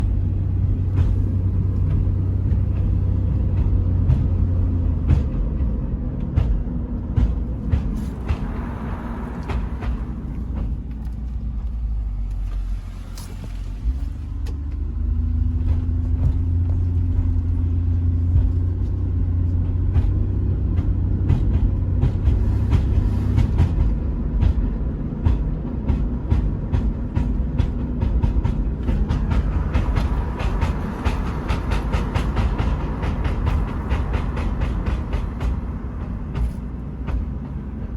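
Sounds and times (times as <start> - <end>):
car road rumble: 0.0 - 37.9.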